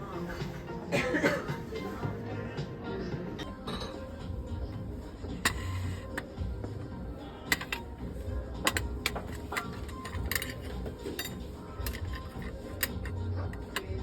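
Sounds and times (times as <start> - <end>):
background music: 0.0 - 14.0
dishes and glassware clinking: 3.4 - 4.3, 5.2 - 14.0.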